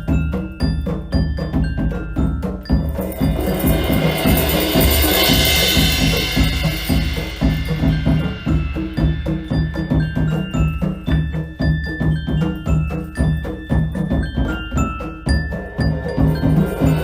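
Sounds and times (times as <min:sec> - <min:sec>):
short bell-like notes: 0:02.6 - 0:17.0
cymbal wash: 0:02.8 - 0:10.7.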